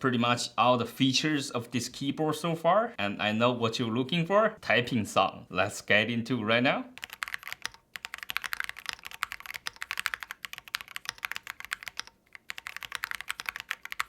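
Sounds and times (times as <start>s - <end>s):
mechanical keyboard typing: 7.0s - 14.0s.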